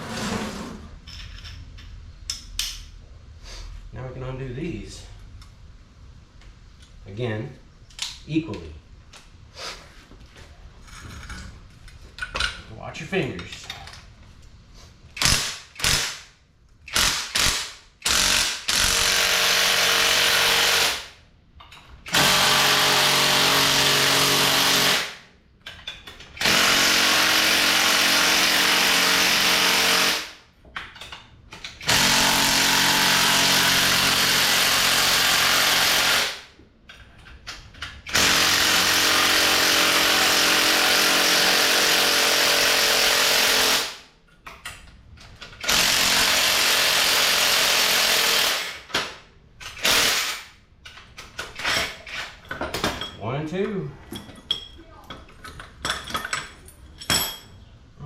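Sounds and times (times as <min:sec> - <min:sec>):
power tool running: 0:22.1 - 0:25.1, 0:26.4 - 0:30.3, 0:31.8 - 0:36.4, 0:38.1 - 0:44.0, 0:45.6 - 0:48.9.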